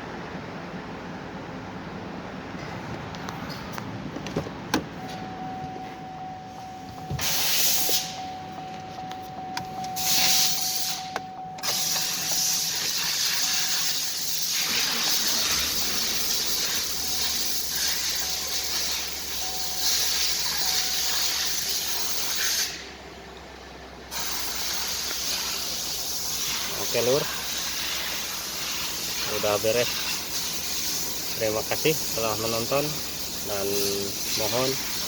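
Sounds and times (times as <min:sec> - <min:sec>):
steady low hum: 0:00.0 - 0:35.0
loud spraying hiss: 0:07.1 - 0:08.2, 0:10.0 - 0:11.1, 0:11.7 - 0:22.8, 0:24.1 - 0:35.0.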